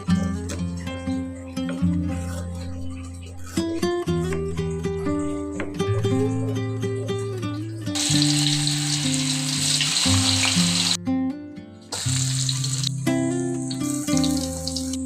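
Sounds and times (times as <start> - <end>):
plucked guitar music: 0.0 - 15.0
food sizzling in oil: 8.0 - 11.0, 11.9 - 15.0.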